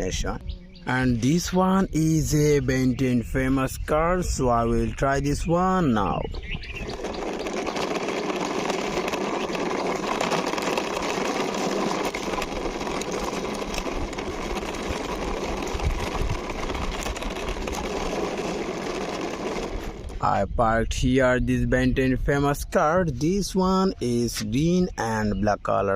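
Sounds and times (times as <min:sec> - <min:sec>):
toy car wheels rattling: 0:05.0 - 0:20.3.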